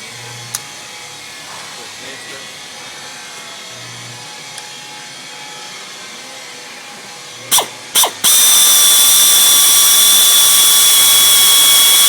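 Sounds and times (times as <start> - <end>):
electric drill drilling metal: 7.5 - 12.0.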